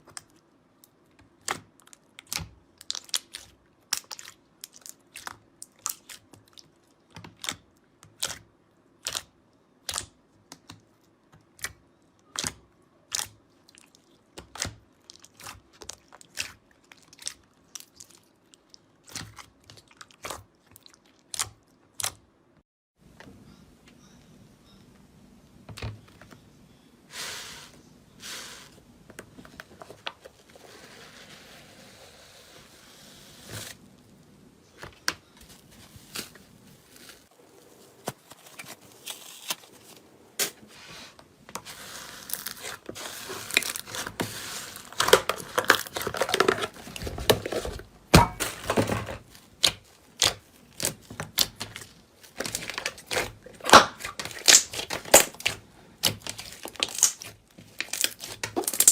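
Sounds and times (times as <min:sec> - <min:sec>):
material crackling and crunching: 0:33.4 - 0:40.7, 0:41.5 - 0:58.9.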